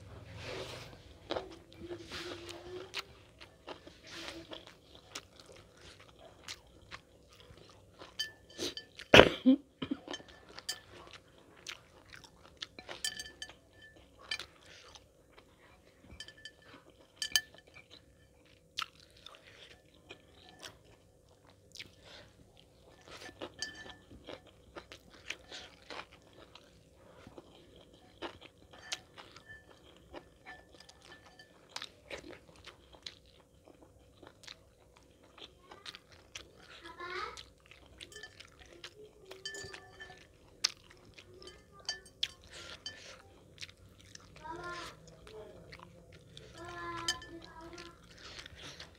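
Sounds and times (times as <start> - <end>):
chewing with crunching bites: 0.1 - 9.2, 9.8 - 48.9.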